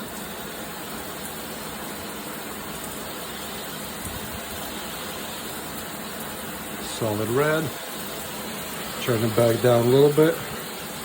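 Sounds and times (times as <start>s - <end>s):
shower water spraying: 0.0s - 11.0s.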